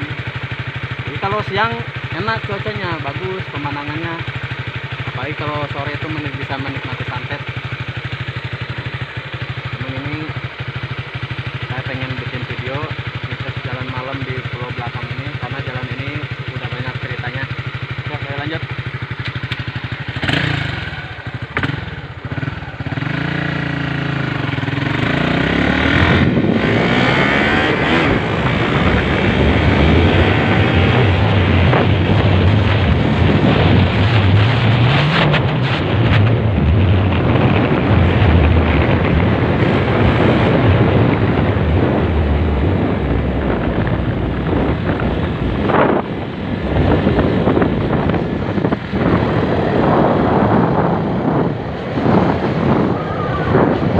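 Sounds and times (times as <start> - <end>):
motorcycle engine pulling away: 0.0 - 53.9
wind rushing over microphone: 14.0 - 53.9.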